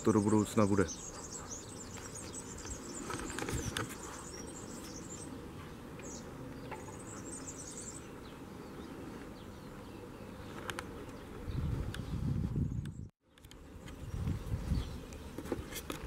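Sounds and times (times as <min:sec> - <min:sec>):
low outdoor background: 0:00.0 - 0:16.0.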